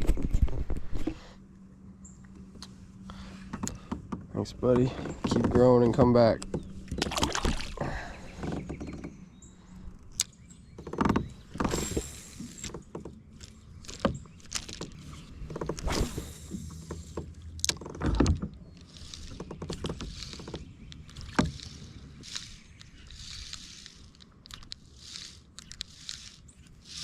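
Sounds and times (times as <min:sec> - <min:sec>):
paddle splashing water: 0:06.9 - 0:08.1.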